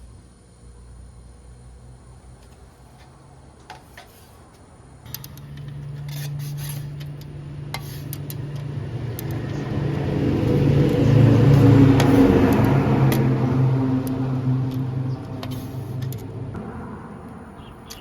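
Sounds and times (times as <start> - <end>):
low mechanical hum: 0.0 - 18.0.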